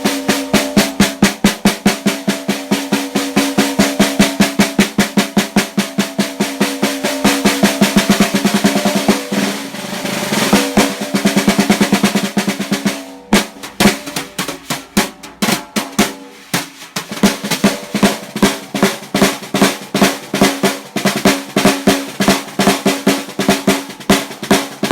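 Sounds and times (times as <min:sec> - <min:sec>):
snare drum played with sticks: 0:00.0 - 0:24.9.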